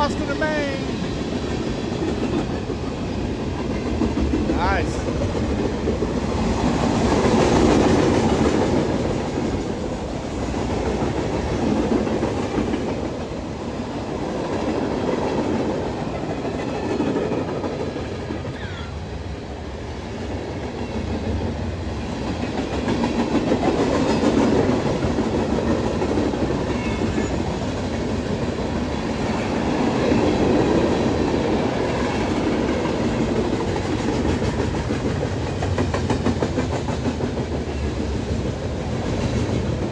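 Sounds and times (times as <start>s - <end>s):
freight train cars rolling past: 0.0s - 39.9s
steel wheels clicking on rails: 20.7s - 39.9s.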